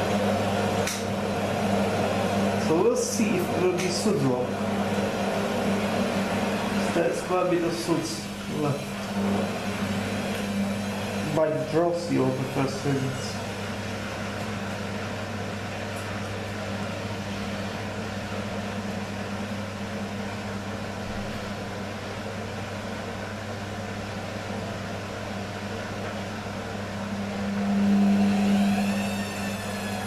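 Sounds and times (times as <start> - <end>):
rising motor whine: 0.0 - 14.2, 26.8 - 30.0
washing machine drum humming: 0.0 - 30.0.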